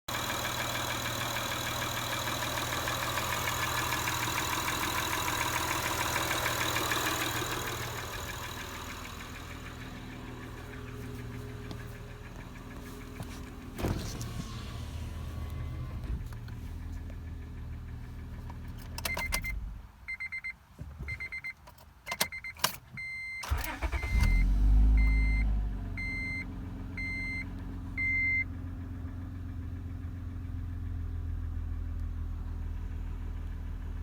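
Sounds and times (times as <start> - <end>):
car engine starting and idling: 0.1 - 20.3, 21.6 - 34.0
car warning chime beeping: 19.0 - 28.5.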